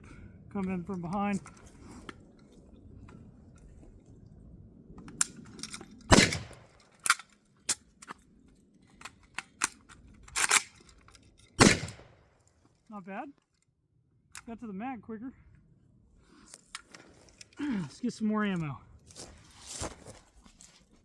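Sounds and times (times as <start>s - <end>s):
rifle magazine change clicks: 5.1s - 8.2s, 8.9s - 12.0s
rifle shots: 6.1s - 6.8s, 11.6s - 12.3s.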